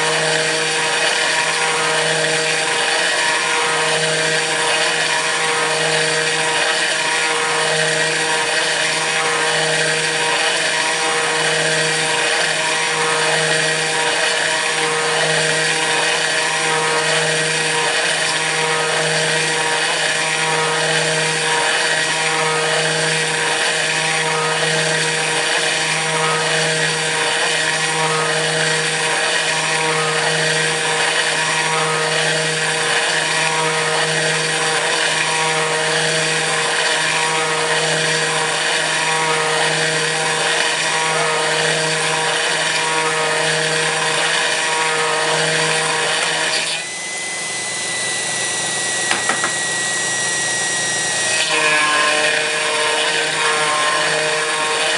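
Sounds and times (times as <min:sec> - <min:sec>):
router cutting metal whine: 0:00.0 - 0:54.9.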